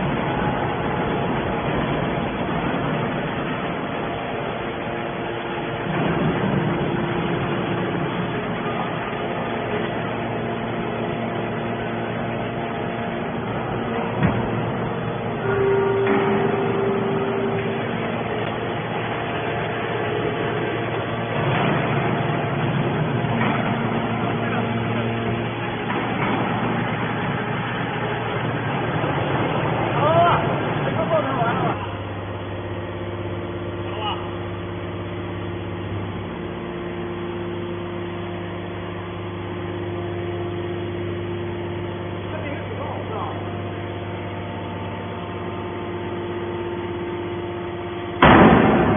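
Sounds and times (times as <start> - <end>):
baler machinery running: 0.0 - 48.9
held tone: 15.3 - 18.7.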